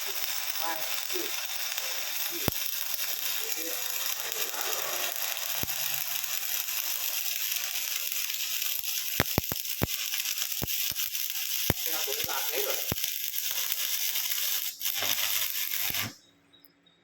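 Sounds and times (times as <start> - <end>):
welding torch hissing: 0.0 - 16.2
sharp clicks: 9.0 - 11.1.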